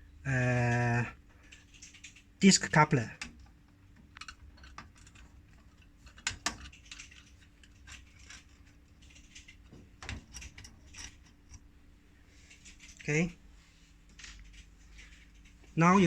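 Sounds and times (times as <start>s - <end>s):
faint steady hum: 0.0s - 16.0s
screwdriver clicking and scraping: 4.2s - 11.6s.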